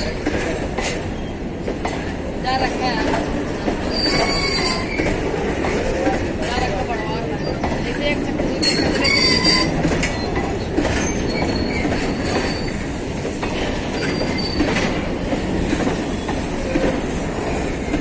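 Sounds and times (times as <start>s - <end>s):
train wheels rumbling on rails: 0.0s - 18.0s
high-pitched wheel squeals: 3.9s - 5.0s, 8.7s - 10.3s.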